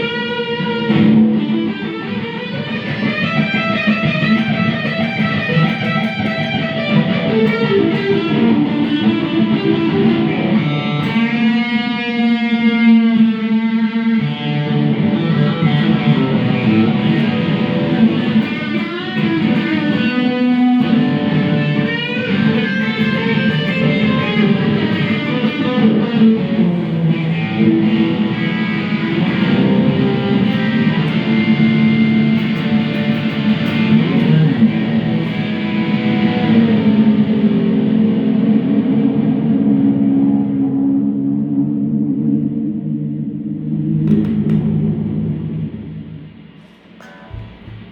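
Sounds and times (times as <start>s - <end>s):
electric guitar notes and chords: 0.0s - 47.9s.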